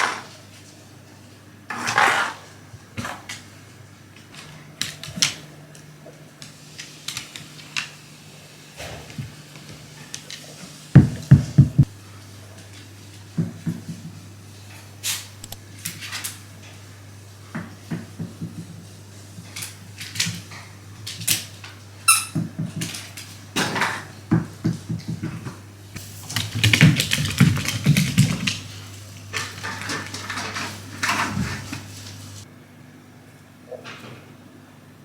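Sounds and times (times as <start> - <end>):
high-pitched squeak: 22.1 - 22.4
paws and claws on hard floor: 22.4 - 32.2.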